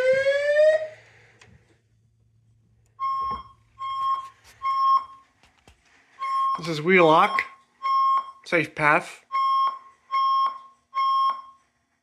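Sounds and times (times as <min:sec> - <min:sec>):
rising whoop alarm tone: 0:00.0 - 0:01.0.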